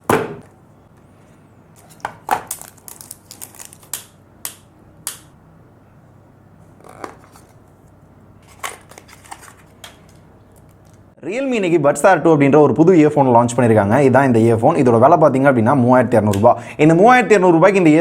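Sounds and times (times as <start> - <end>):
packaging crinkling and clicking: 1.8 - 4.2, 8.4 - 11.0.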